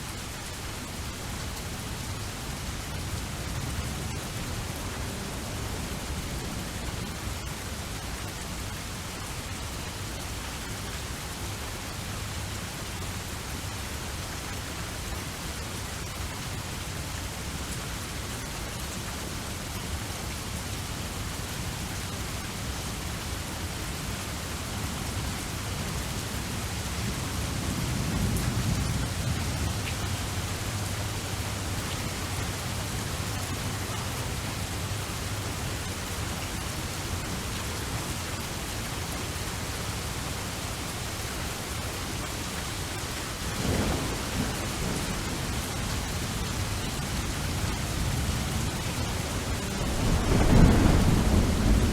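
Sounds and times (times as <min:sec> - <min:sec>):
steady rain hissing: 0:00.0 - 0:51.9
low rolls of thunder: 0:26.4 - 0:34.2, 0:43.3 - 0:51.9.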